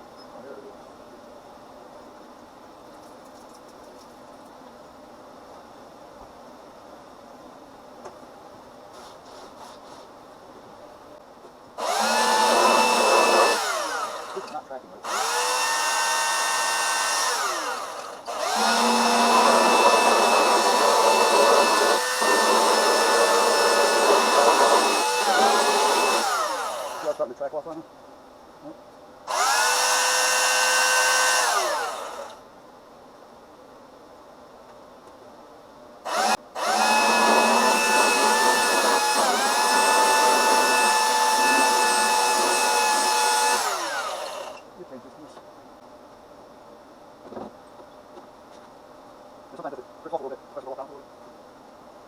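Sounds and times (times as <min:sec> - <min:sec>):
electric power sander whining: 0:11.8 - 0:27.2, 0:29.3 - 0:32.4, 0:36.1 - 0:44.6
belt sander rasping: 0:17.2 - 0:27.2.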